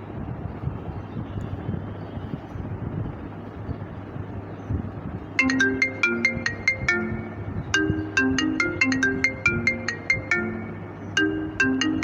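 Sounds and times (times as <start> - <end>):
phone ringtone notes: 5.4 - 12.0.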